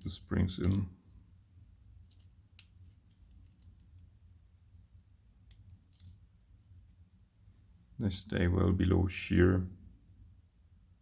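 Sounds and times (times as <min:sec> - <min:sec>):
small metal lock parts clicking: 0:00.6 - 0:00.9, 0:02.0 - 0:04.1, 0:05.5 - 0:06.2.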